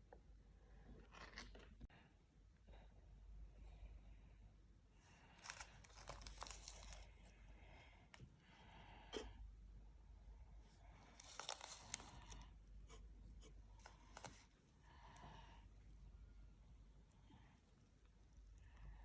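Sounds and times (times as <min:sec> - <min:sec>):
soft rustling: 0:10.7 - 0:14.7
light clicks and scrapes: 0:11.0 - 0:14.6.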